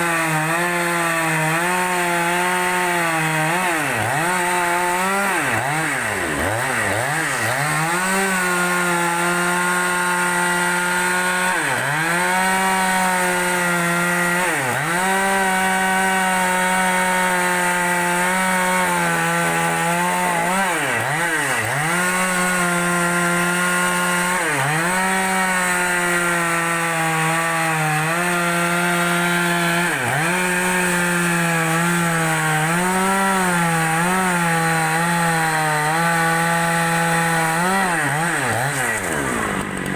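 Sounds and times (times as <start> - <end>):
chainsaw ripping a log: 0.0 - 39.9.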